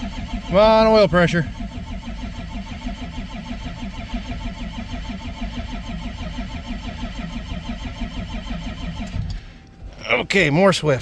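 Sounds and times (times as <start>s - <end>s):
diesel engine cranking: 0.0s - 11.0s.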